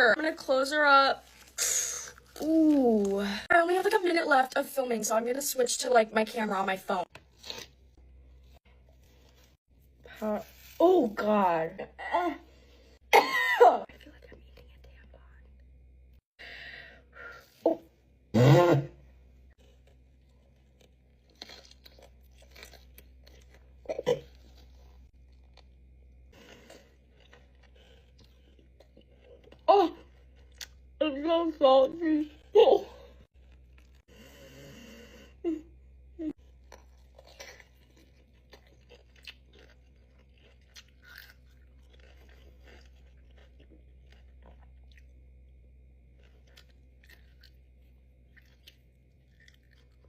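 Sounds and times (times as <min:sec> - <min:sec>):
chewing and crunching: 0:19.4 - 0:31.0, 0:32.3 - 0:34.2, 0:36.4 - 0:50.0.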